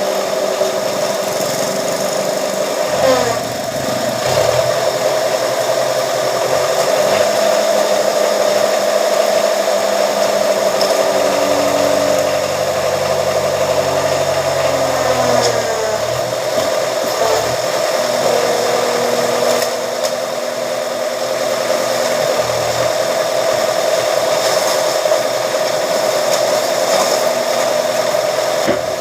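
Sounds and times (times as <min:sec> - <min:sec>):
press machine motor humming: 0:00.0 - 0:29.0
deeper hum: 0:00.8 - 0:23.7.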